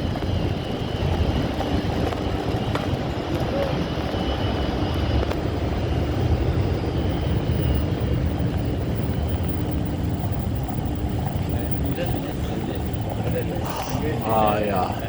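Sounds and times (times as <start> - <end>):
vehicle interior road rumble: 4.8 - 15.0.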